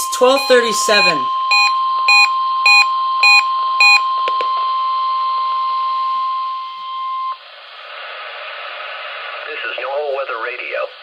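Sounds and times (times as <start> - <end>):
pulsed electronic beeps: 0.0 - 4.0
steady warning alarm tone: 0.0 - 7.3
radio hiss: 7.5 - 11.0.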